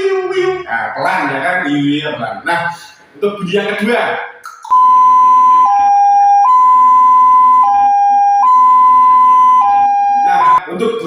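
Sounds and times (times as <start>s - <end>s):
two-tone ambulance siren: 4.7s - 10.6s.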